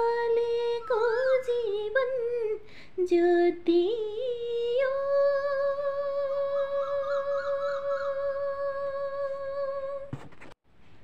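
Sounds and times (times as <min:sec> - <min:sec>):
woman singing a long note: 0:00.0 - 0:10.1.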